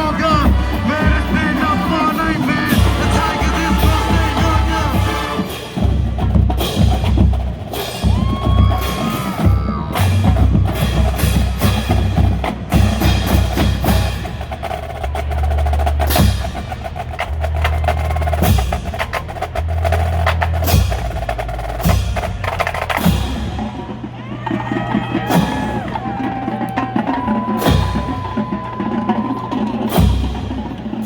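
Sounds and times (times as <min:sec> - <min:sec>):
marching band playing: 0:00.0 - 0:31.0.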